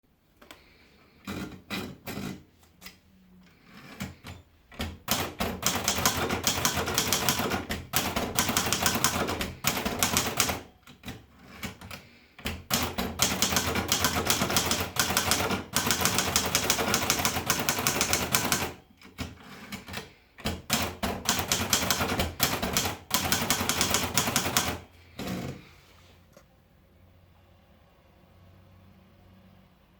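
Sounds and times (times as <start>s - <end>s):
manual typewriter keystrokes: 3.8s - 25.6s.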